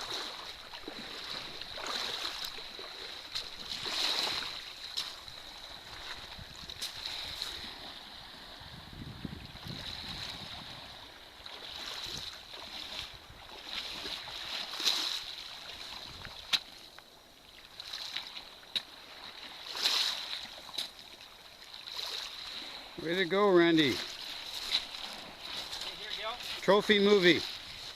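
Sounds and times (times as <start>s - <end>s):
waves on a stony beach: 0.0s - 27.9s
sharp clicks or splashes: 16.2s - 16.8s, 18.7s - 18.9s.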